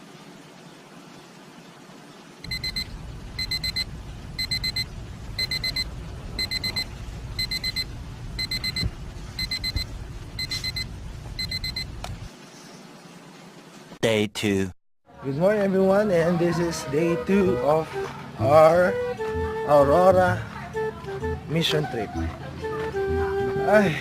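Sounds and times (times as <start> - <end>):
digital alarm beeping: 2.5 - 9.8, 10.4 - 11.9
low rumble: 2.5 - 12.3.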